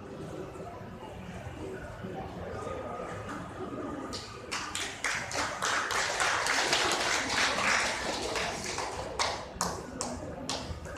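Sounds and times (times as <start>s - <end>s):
audience applauding: 4.5s - 10.7s.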